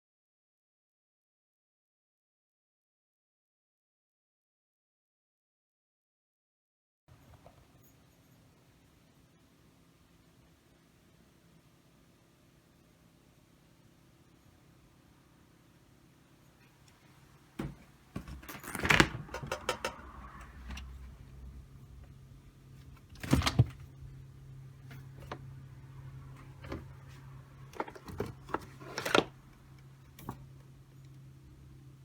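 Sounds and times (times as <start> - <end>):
low steady hum: 7.1 - 32.0
refrigerator drawers knocking and sliding: 17.6 - 20.9, 22.9 - 23.9, 26.4 - 29.4.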